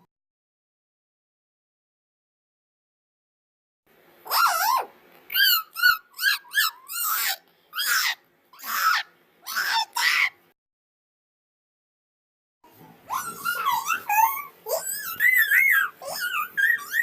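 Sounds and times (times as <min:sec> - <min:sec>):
person making animal-like squeals: 0:04.3 - 0:10.4, 0:13.1 - 0:17.0.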